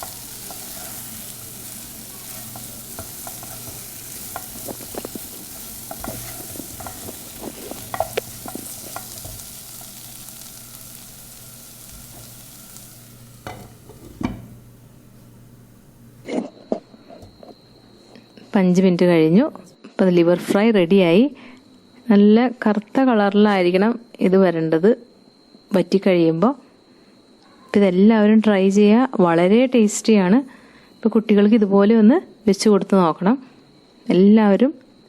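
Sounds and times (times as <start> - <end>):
spoon scraping a pan: 0.0 - 16.3
food sizzling in a pan: 0.0 - 18.0
knocks: 13.4 - 14.6.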